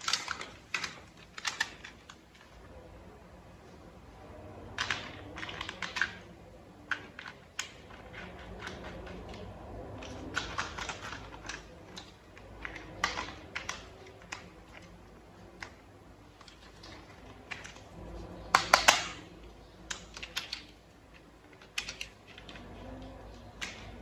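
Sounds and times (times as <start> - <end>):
plastic toy parts clicking: 0.0 - 2.7, 4.5 - 24.0.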